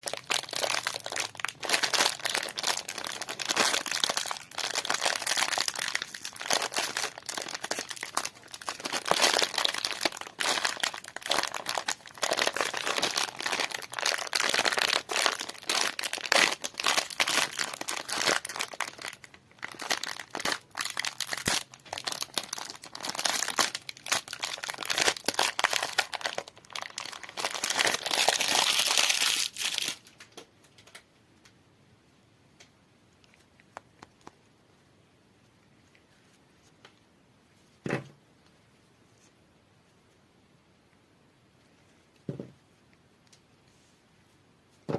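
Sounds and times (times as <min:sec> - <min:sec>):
packaging wrappers crinkling: 0:00.0 - 0:31.0.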